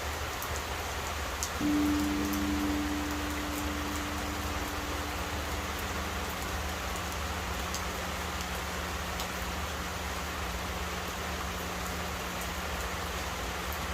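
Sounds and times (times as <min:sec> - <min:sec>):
steady rain falling: 0:00.0 - 0:13.9
large temple bell hum: 0:01.6 - 0:12.4.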